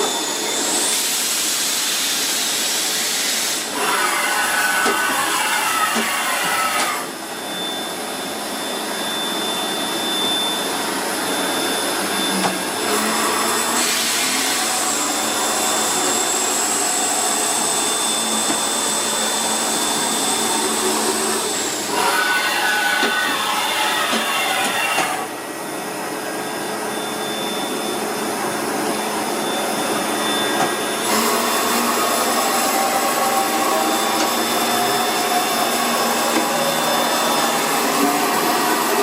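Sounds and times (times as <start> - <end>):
machine loud steady hiss: 0.0 - 7.3, 12.7 - 25.8.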